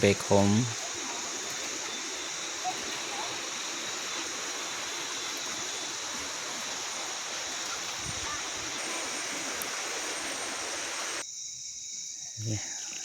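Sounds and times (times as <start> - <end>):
steady outdoor hiss: 0.0 - 13.0
faint bird chirps: 0.1 - 11.2.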